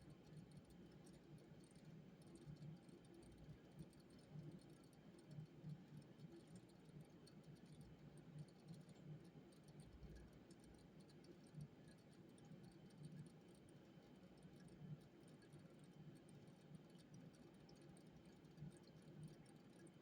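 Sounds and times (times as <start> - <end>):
small clicks and taps at a desk: 0.2 - 20.0.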